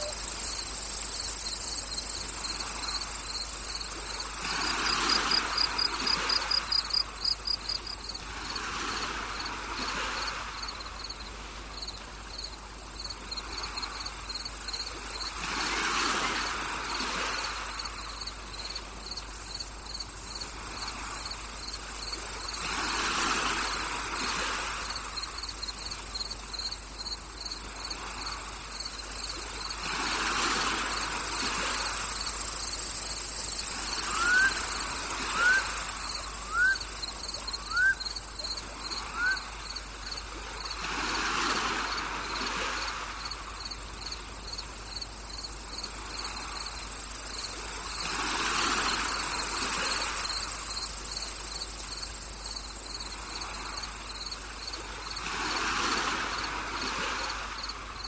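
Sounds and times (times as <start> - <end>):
crickets buzzing: 0.0 - 58.0
insect chirping in quick pulses: 0.0 - 58.0
short rising calls: 34.0 - 38.1.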